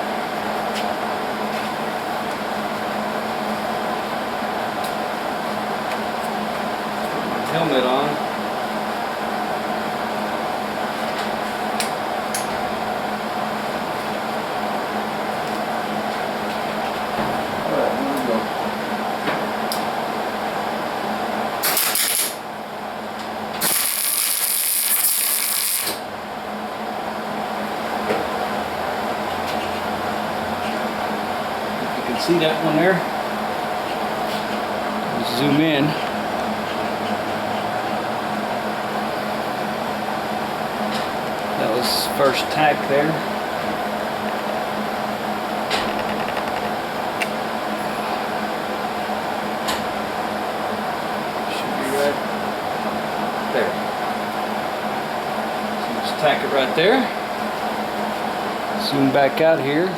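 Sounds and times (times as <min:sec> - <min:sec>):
fan whirring: 0:00.0 - 0:59.9
welding arc noise: 0:21.6 - 0:22.5, 0:23.5 - 0:26.1, 0:45.7 - 0:47.4.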